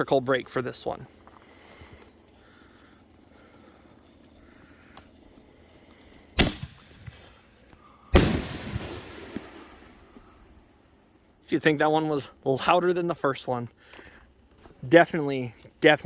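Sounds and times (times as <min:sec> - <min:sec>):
crickets chirping: 0:00.0 - 0:16.0
firework shell launch thump: 0:06.4 - 0:07.3, 0:08.1 - 0:10.1
firework shell bursting overhead: 0:06.4 - 0:10.6.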